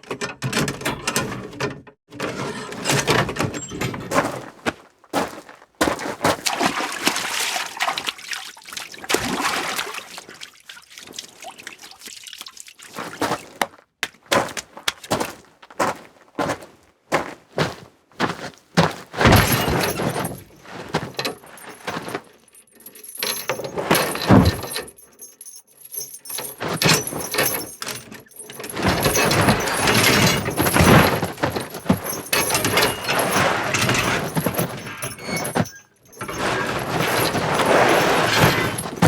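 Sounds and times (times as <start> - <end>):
sharp knocks and thuds: 17.6 - 22.2, 28.6 - 39.0
handling noise: 17.6 - 39.0.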